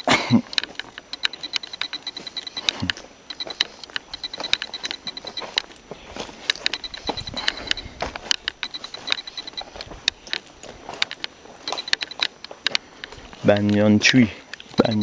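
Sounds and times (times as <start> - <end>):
footsteps crunching on trail: 0.4 - 15.0
high-pitched chirping: 0.6 - 12.4, 14.8 - 15.0.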